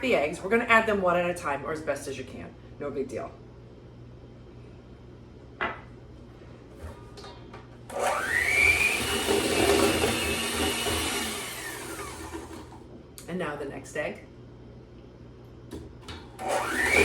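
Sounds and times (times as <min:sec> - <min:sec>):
electric mixer motor whining: 0:07.9 - 0:12.8, 0:16.4 - 0:17.0.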